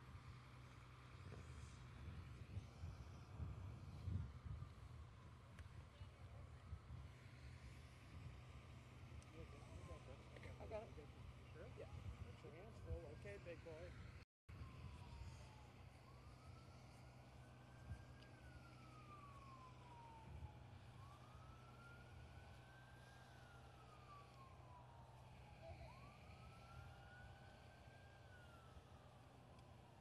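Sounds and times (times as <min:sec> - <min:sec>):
faint siren wailing: 0:00.1 - 0:30.0.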